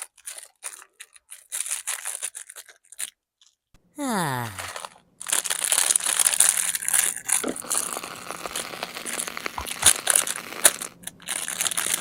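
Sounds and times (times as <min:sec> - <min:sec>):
packaging crinkling and rustling: 0:00.0 - 0:03.6, 0:04.6 - 0:12.0.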